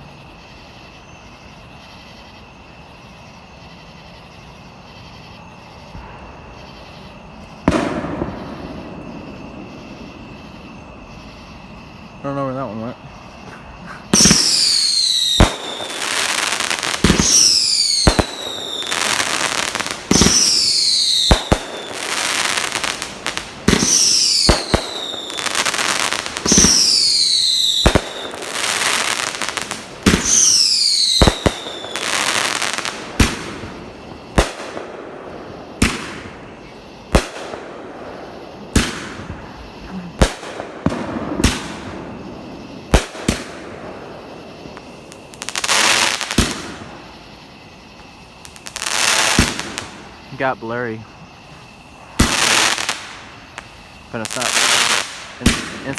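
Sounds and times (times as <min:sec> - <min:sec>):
fireworks whistling and bursting: 0:00.0 - 0:55.9
sharp firework bangs: 0:07.5 - 0:11.3, 0:13.5 - 0:47.4, 0:48.4 - 0:50.4, 0:52.0 - 0:55.9.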